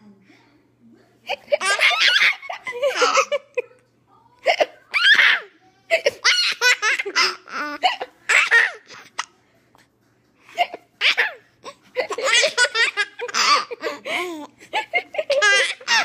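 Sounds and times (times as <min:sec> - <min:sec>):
child laughing: 0:01.3 - 0:03.7, 0:12.0 - 0:16.0.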